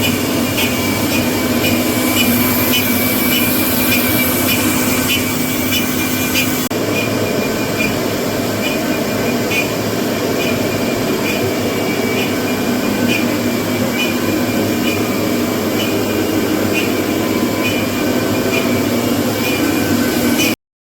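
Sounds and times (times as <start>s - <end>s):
cnc router machine noise: 0.0s - 20.6s.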